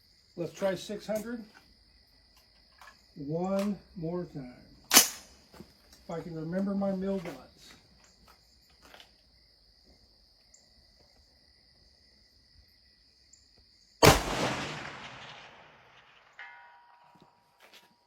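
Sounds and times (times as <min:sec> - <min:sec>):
rifle shot with echo: 0:04.9 - 0:05.3, 0:14.0 - 0:16.8
steel target ringing: 0:16.3 - 0:17.3.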